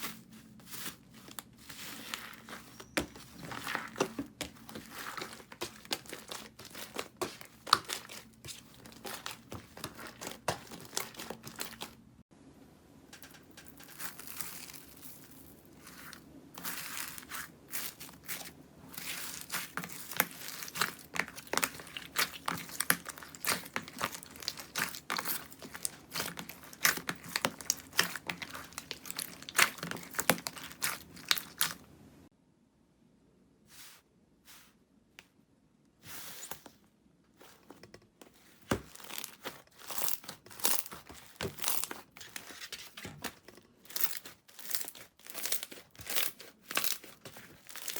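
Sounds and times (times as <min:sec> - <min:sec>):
slime crackling and popping: 0:03.2 - 0:12.0, 0:19.0 - 0:31.8, 0:38.7 - 0:47.9.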